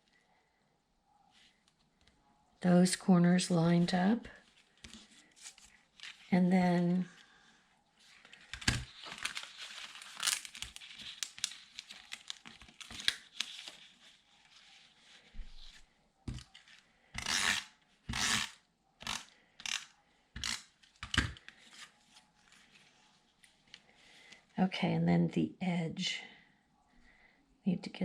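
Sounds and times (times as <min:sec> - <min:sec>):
paper rustling and crinkling: 0:04.2 - 0:06.3, 0:08.0 - 0:16.9, 0:20.8 - 0:24.0.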